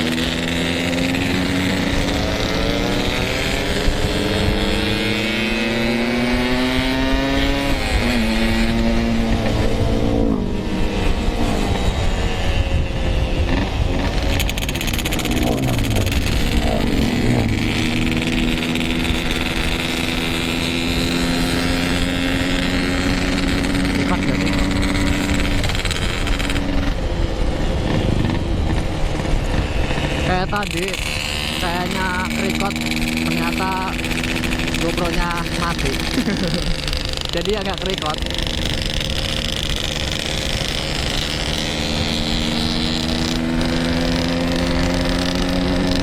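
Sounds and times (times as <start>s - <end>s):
wind noise on microphone: 0.0s - 34.8s
motorcycle engine accelerating: 0.0s - 46.0s.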